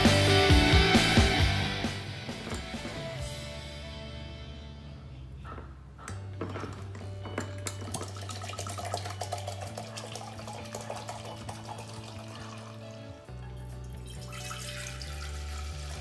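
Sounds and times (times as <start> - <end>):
background music with low notes: 0.0 - 16.0
liquid pouring and splashing: 7.6 - 13.2, 13.9 - 16.0.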